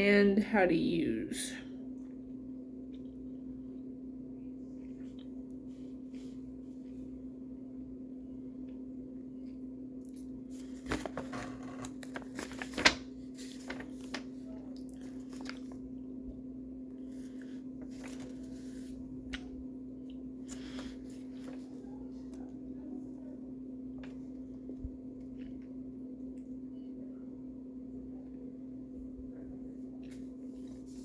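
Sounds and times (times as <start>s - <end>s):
low electrical hum: 0.0s - 31.0s
paper and packaging crinkling: 10.6s - 15.8s, 17.2s - 19.0s.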